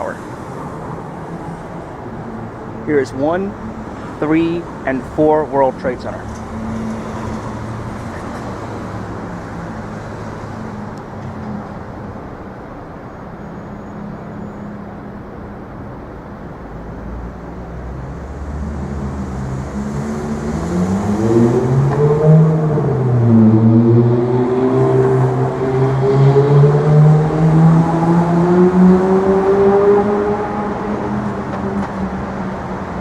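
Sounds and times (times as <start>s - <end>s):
street traffic engines: 0.0s - 33.0s
vehicle engine accelerating: 5.7s - 12.2s, 16.0s - 33.0s.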